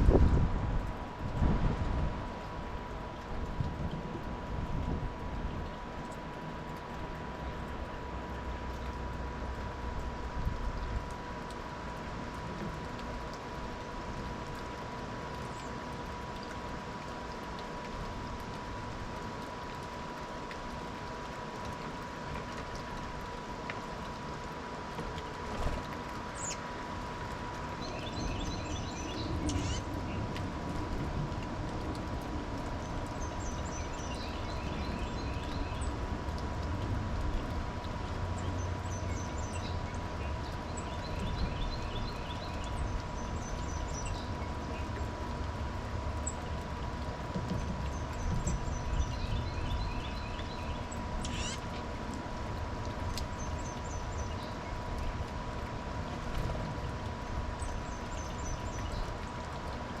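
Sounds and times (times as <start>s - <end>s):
steady low rumble: 0.0s - 6.2s
songbird singing: 26.4s - 26.6s, 27.8s - 30.2s, 32.8s - 36.0s, 38.4s - 45.1s, 47.6s - 51.8s.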